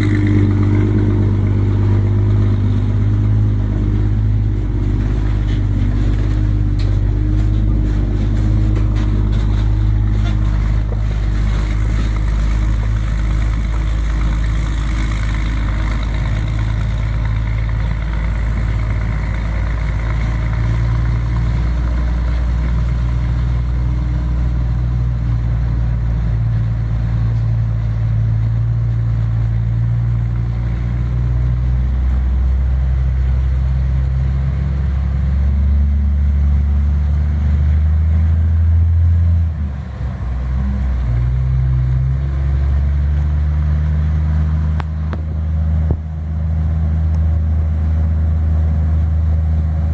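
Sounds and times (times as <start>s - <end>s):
truck diesel engine pulling away: 0.0s - 49.9s.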